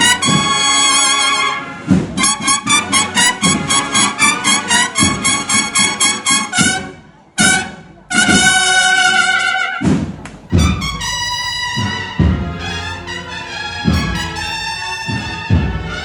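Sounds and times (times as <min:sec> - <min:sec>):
brass band playing a march: 0:00.0 - 0:16.0
bass drum strokes: 0:09.8 - 0:16.0.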